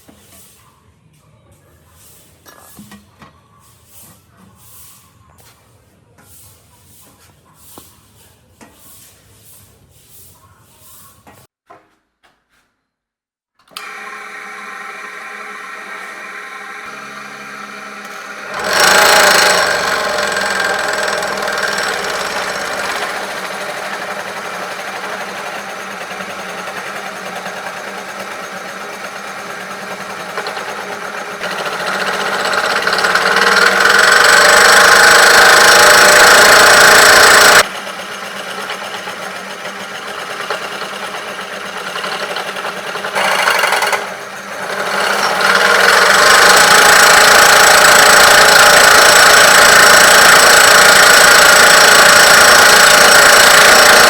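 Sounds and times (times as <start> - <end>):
sawmill machinery running: 13.7 - 54.0.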